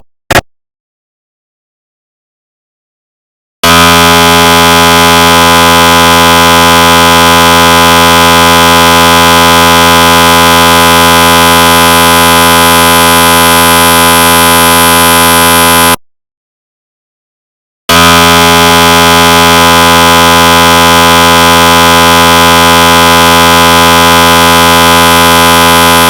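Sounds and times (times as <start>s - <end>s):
mri scanner buzzing: 3.6s - 16.0s, 17.9s - 26.0s.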